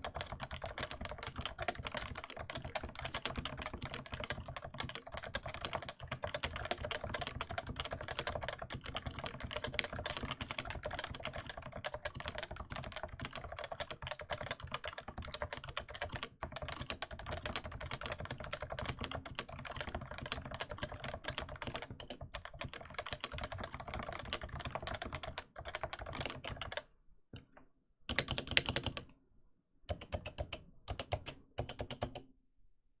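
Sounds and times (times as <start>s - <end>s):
fast keyboard typing: 0.0s - 26.8s, 28.1s - 29.1s, 29.9s - 32.2s.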